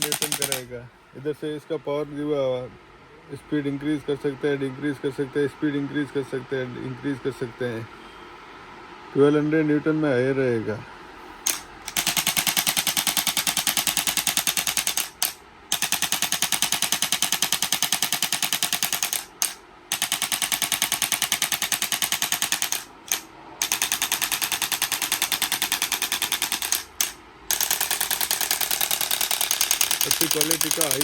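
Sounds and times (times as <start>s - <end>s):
adjusting gun rattling: 0.0s - 0.7s, 11.4s - 31.0s.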